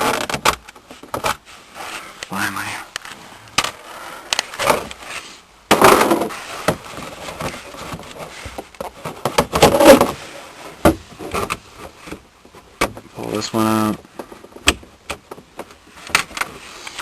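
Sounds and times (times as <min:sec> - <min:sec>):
plastic and metal clattering: 0:05.7 - 0:13.1.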